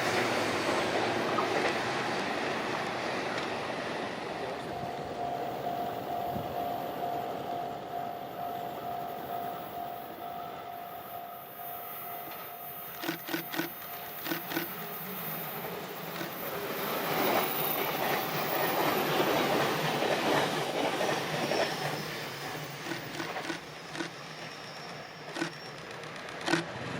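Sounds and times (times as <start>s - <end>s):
train running noise: 0.0s - 26.9s
train wheels clacking over rail joints: 17.1s - 24.2s, 25.2s - 26.9s.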